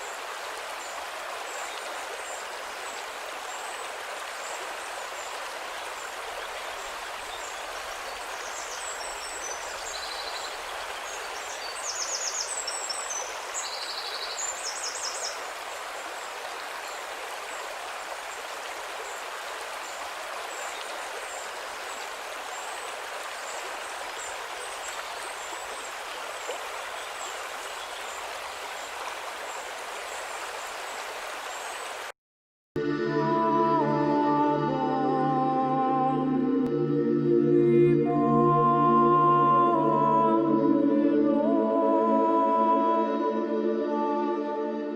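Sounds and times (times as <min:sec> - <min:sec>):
river water rushing: 0:00.0 - 0:32.1
soft ambient music: 0:32.8 - 0:44.9.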